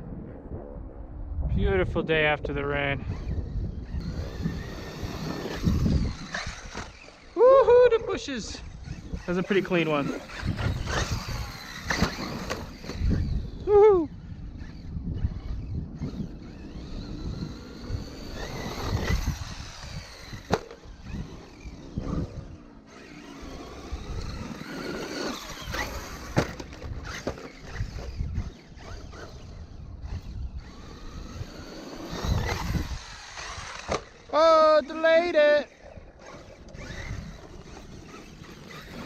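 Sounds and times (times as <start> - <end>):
electric motor whine: 3.0 - 39.0
sharp knocks from landings: 10.1 - 13.3, 18.3 - 22.3, 24.0 - 29.4, 32.2 - 34.3.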